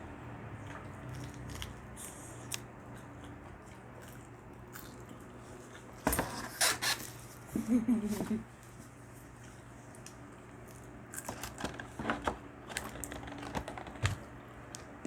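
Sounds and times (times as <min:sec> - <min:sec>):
quiet chewing: 0:00.5 - 0:06.0, 0:08.6 - 0:11.4.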